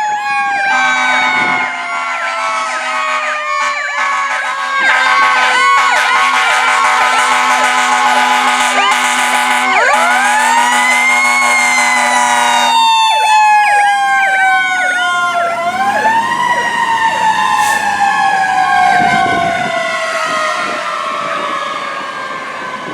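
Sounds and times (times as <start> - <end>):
siren rising and falling: 0.0 - 22.9
siren yelping: 0.0 - 22.9
steady horn blast: 0.6 - 12.9, 17.2 - 18.0.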